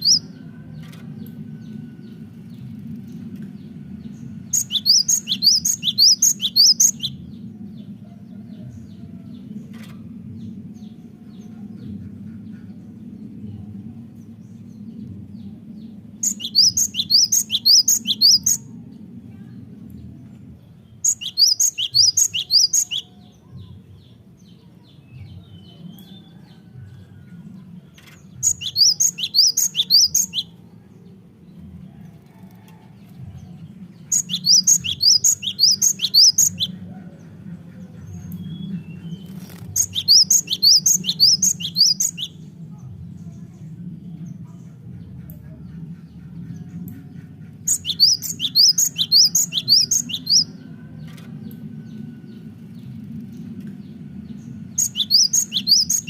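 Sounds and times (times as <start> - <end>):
steady low hum: 0.0 - 56.0
bird singing rapid high notes: 4.6 - 7.1, 16.2 - 18.6, 21.1 - 23.1, 28.4 - 30.5.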